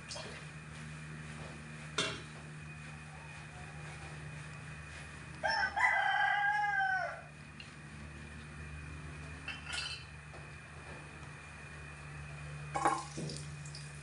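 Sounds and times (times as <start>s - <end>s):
steady low hum: 0.0s - 14.0s
rooster crowing: 5.3s - 7.5s.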